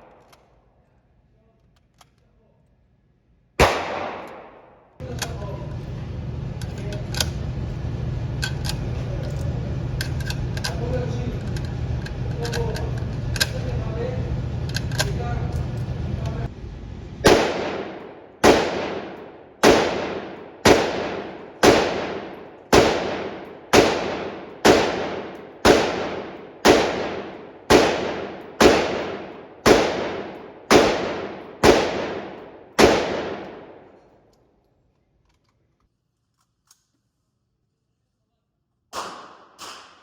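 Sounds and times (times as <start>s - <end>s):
gunshots echoing indoors: 0.0s - 0.7s, 3.6s - 5.4s, 17.2s - 34.4s, 38.9s - 40.0s.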